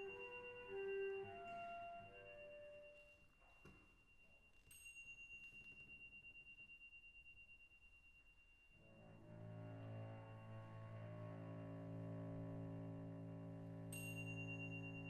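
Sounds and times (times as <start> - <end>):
chamber music: 0.0 - 5.7, 8.8 - 15.0
high bell-like tone: 0.0 - 9.5, 10.1 - 15.0.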